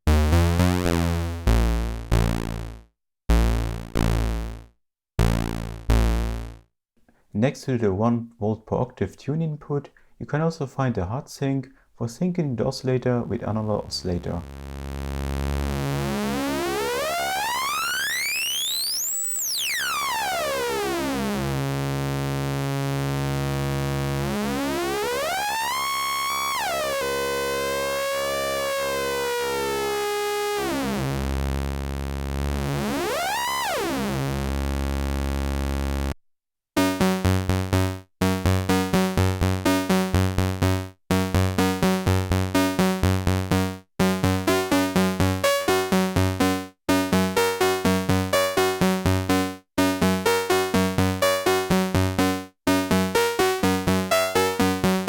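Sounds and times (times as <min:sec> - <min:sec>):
short decaying synth notes: 0:13.2 - 0:21.3
sweeping synth drone: 0:14.4 - 0:18.8.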